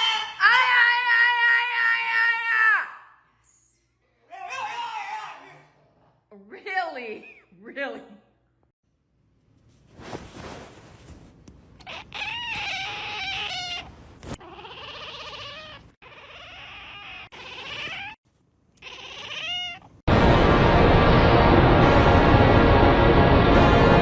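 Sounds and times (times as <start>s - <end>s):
cat meowing: 11.8s - 18.2s, 18.8s - 20.0s
loud music: 20.1s - 24.0s.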